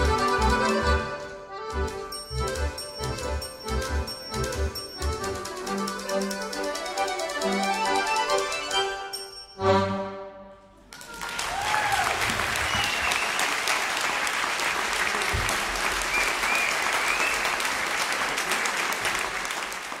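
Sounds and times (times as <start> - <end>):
accordion orchestra chord: 0.0 - 10.8
audience applause: 10.8 - 20.0.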